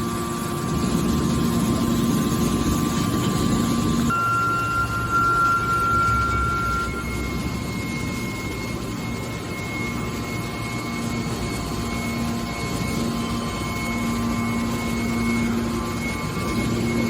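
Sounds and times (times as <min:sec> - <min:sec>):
hydraulic baler running: 0:00.7 - 0:17.0.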